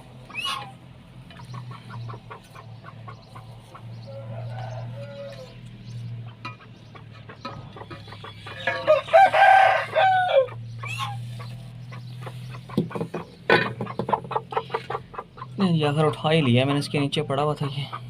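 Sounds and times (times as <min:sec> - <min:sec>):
hens clucking: 0:00.0 - 0:18.0
rooster crowing: 0:04.0 - 0:05.6, 0:08.6 - 0:11.1.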